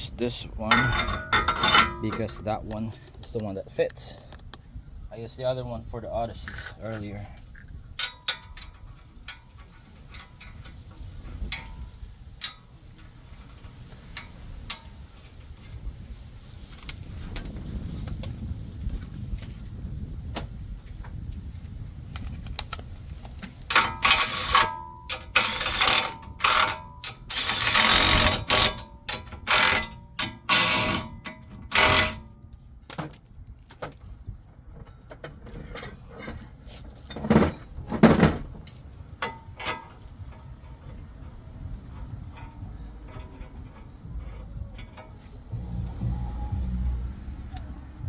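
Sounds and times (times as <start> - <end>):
metal tool scraping and clanking: 0.6 - 3.4, 23.7 - 32.3, 34.9 - 47.0.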